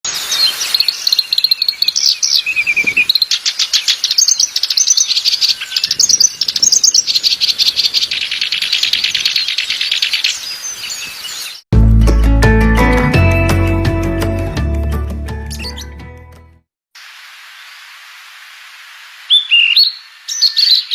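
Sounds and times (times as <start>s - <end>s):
songbirds twittering and chirping: 0.1s - 11.6s, 19.1s - 20.9s.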